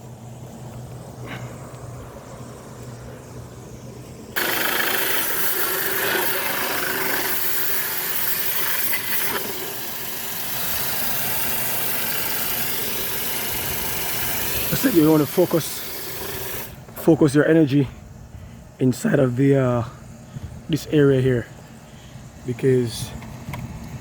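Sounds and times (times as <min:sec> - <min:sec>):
garden hose water spraying: 0:04.3 - 0:16.8
low steady hum: 0:09.5 - 0:24.0.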